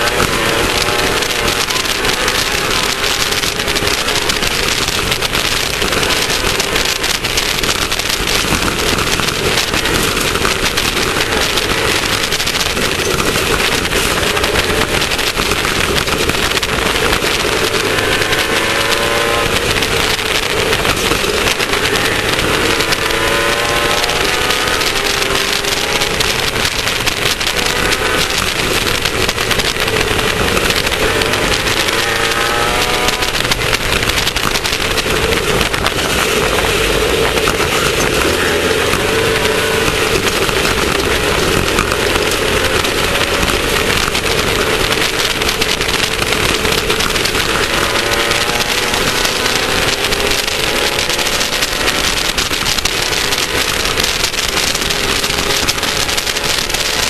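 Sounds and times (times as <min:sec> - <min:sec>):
loud rushing noise: 0:00.0 - 0:57.0
race car engine running hard: 0:00.0 - 0:57.0.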